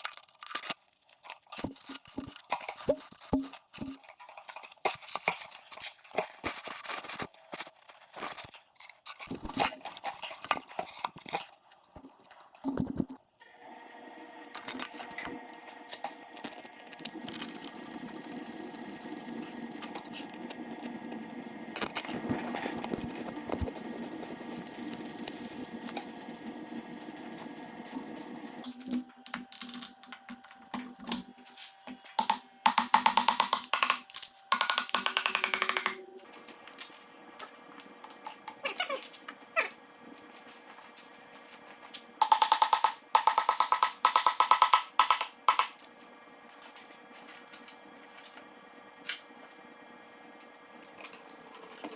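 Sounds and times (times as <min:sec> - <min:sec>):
machine hum: 0:12.8 - 0:51.9.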